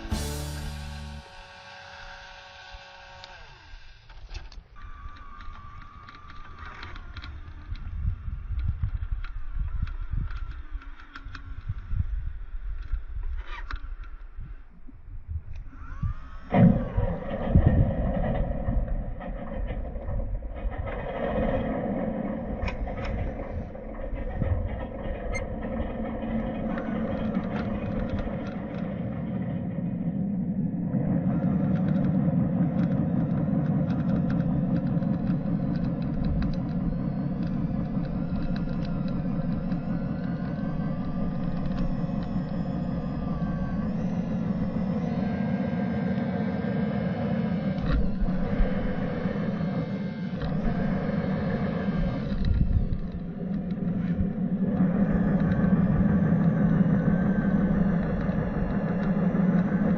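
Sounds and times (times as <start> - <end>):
toy car electric motor whining: 0.0 - 14.6, 15.7 - 17.8, 31.4 - 59.9
scattered clicks: 3.2 - 14.6, 15.5 - 30.0, 31.2 - 59.9.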